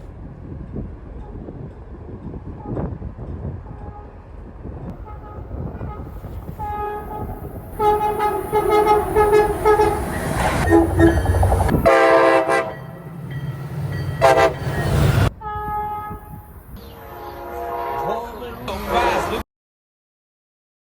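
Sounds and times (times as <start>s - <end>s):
moving train rumbling: 0.0s - 19.4s
locomotive air horns blowing: 4.9s - 13.0s, 14.1s - 19.4s.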